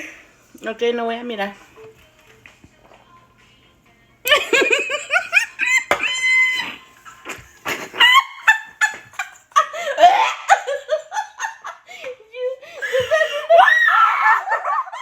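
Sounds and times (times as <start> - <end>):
girls cackling laughter: 4.3 - 15.0.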